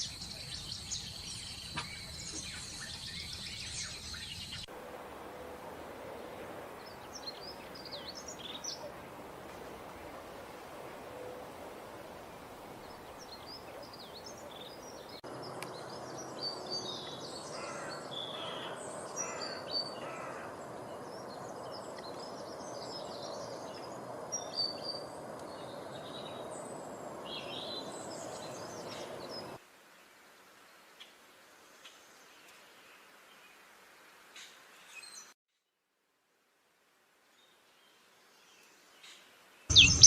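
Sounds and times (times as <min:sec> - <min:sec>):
birds chirping and singing: 0:00.0 - 0:04.7, 0:39.7 - 0:40.0
outdoor background rush: 0:00.0 - 0:29.6, 0:39.7 - 0:40.0.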